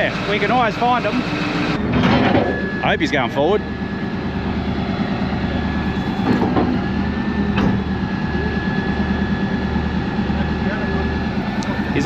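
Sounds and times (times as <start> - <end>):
bulldozer engine and tracks clattering: 0.0 - 12.0
faint high whine: 2.3 - 7.4.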